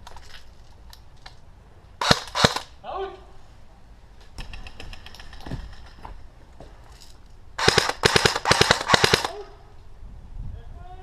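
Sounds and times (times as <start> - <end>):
airsoft gun firing: 2.0 - 2.7, 7.6 - 9.4.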